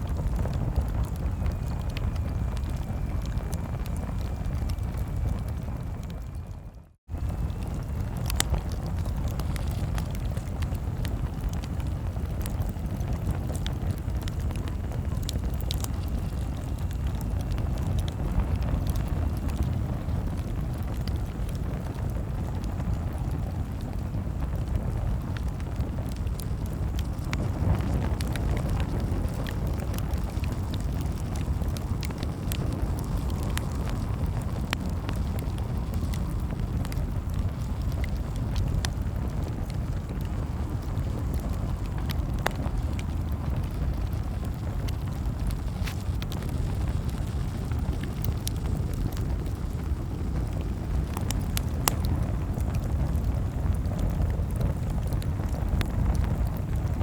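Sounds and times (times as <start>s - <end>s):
campfire crackling: 0.0s - 57.0s.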